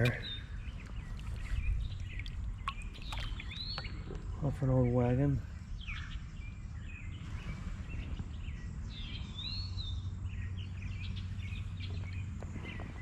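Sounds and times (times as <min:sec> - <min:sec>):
songbirds chirping: 0:00.0 - 0:13.0
steady low rumble: 0:00.0 - 0:13.0.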